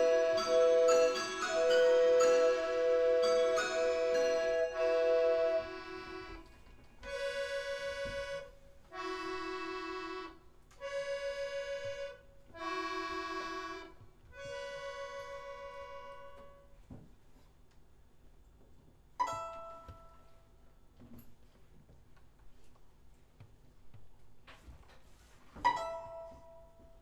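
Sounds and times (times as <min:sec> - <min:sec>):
reedy instrument playing held chords: 0:00.0 - 0:06.5.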